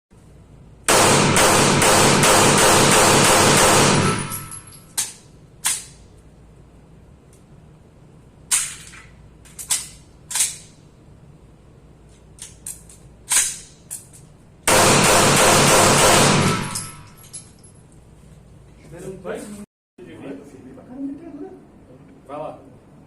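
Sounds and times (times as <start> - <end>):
loud gunshots: 0.9 - 4.5, 14.7 - 16.8.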